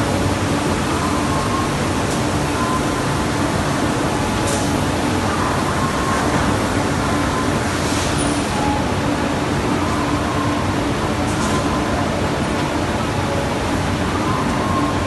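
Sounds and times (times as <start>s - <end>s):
industrial machinery noise: 0.0s - 15.0s.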